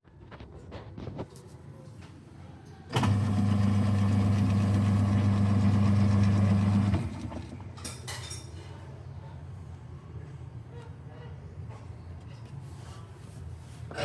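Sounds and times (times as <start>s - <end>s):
washing machine motor humming: 2.9s - 7.7s.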